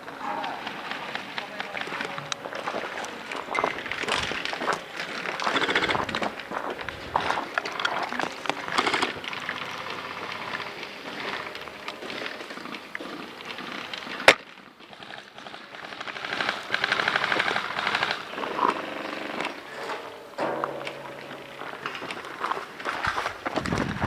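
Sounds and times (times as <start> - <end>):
rapid fine ticking: 0.4 - 6.6, 7.4 - 23.0
rustling movement: 0.6 - 24.0
airsoft gunfire: 4.3 - 6.4, 13.7 - 22.2.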